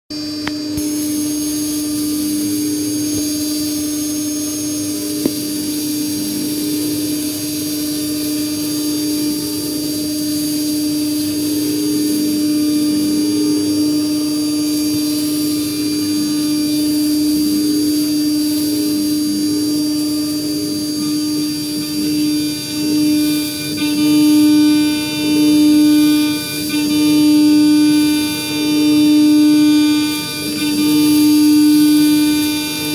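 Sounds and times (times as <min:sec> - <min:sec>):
milling spindle steady tone: 0:00.2 - 0:32.9
fine cutting hiss: 0:00.7 - 0:32.9.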